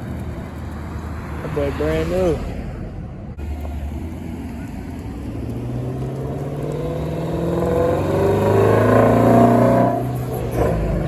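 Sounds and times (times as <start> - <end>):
car engine droning: 0.0 - 11.0.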